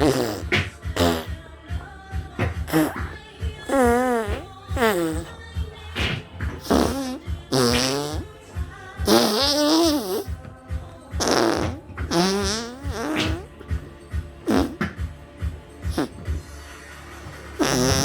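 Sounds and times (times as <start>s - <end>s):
fart sound effects: 0.0s - 1.4s, 2.4s - 5.4s, 6.0s - 8.3s, 9.0s - 10.5s, 11.2s - 13.7s, 14.4s - 15.1s, 15.8s - 16.4s, 17.6s - 18.0s
background music with beat: 0.0s - 18.0s.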